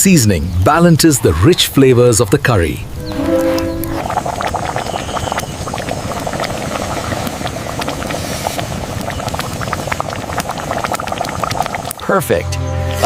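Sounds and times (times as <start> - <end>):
curry bubbling in pot: 3.9 - 12.1.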